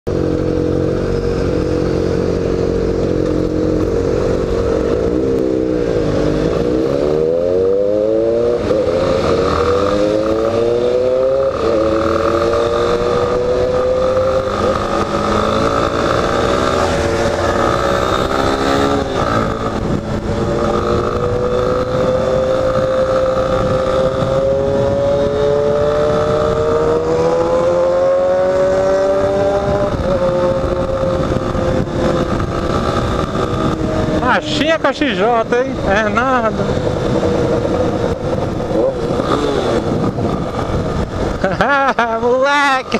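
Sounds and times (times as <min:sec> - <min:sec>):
motorcycle engine revving: 0:00.1 - 0:42.9.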